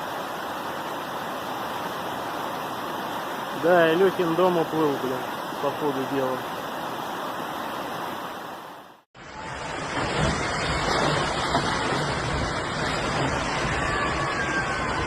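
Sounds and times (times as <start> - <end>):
floodwater rushing: 0.0 - 15.0.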